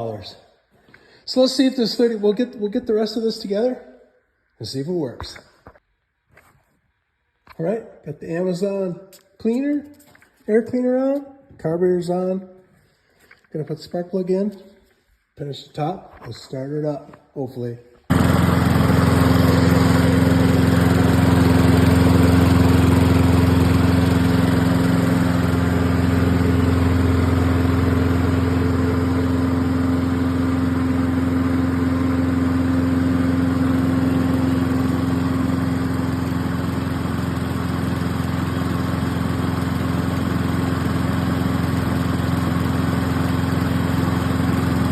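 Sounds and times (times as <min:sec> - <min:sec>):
lawn mower engine running: 0:18.1 - 0:44.9.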